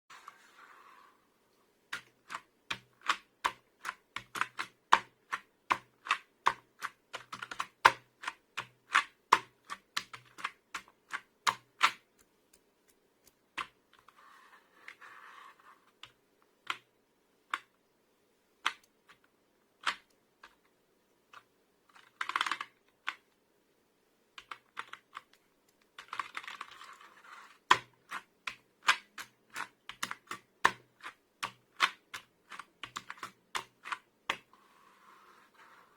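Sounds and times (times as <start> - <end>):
soft noise: 0.1 - 1.9, 34.4 - 35.9.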